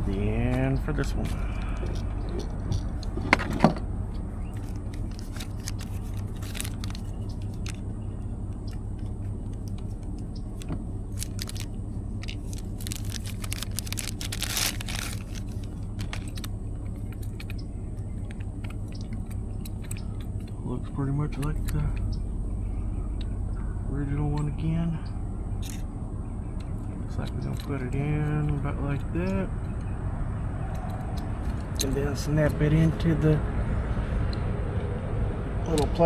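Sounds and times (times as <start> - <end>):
steady low hum: 0.0 - 36.0
small parts clicking and rattling: 1.4 - 3.7, 4.5 - 7.9, 8.5 - 20.6, 25.6 - 25.9, 26.6 - 28.6.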